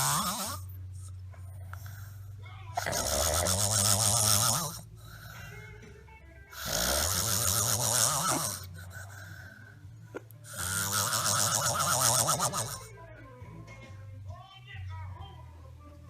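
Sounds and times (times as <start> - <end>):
person snoring: 0.0 - 5.8, 6.5 - 12.9
quiet breathing: 0.0 - 13.8.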